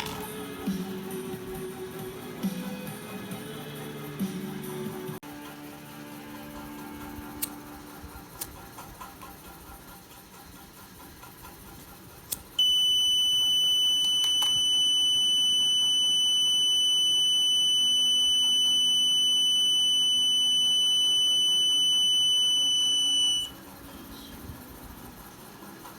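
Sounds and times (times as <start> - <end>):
click: 12.2 - 12.5
high-pitched buzzer tone: 12.6 - 23.5.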